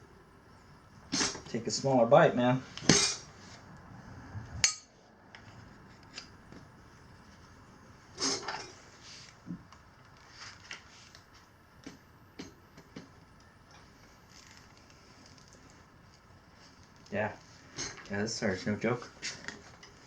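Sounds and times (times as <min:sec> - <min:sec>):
tire levers scraping wheel rim: 0:02.7 - 0:03.6.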